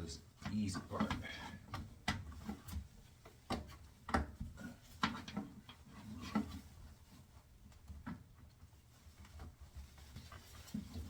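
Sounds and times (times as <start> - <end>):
rubbing and handling: 4.7 - 11.0.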